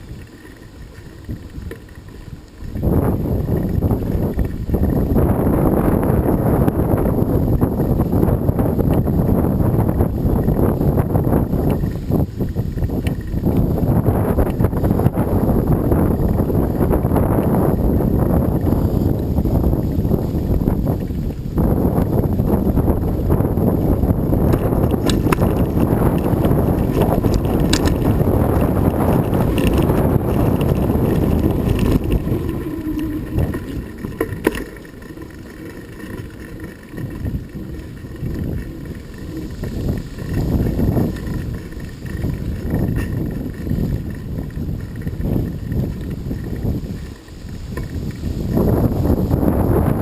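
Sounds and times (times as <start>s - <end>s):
wind rushing over microphone: 0.0s - 50.0s
faint clicks: 11.6s - 13.7s.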